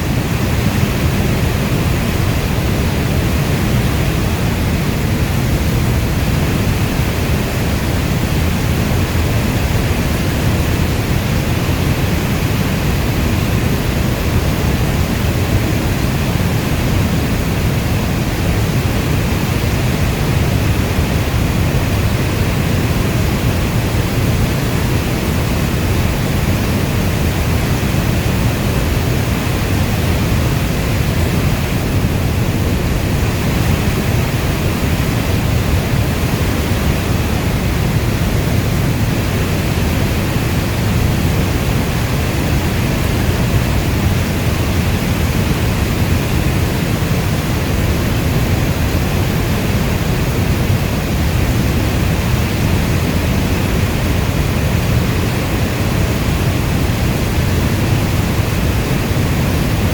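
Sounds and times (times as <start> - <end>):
steady dense rain: 0.0 - 59.9.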